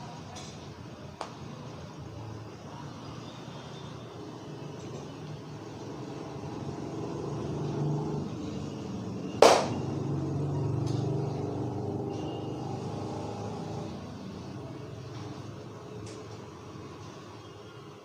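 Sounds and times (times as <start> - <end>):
road traffic rumbling: 0.0 - 17.3
sharp loud crack: 9.4 - 9.8.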